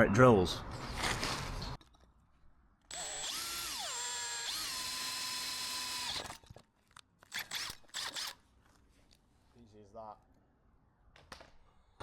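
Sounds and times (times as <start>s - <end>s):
power drill drilling metal: 2.9s - 6.4s, 7.3s - 8.4s.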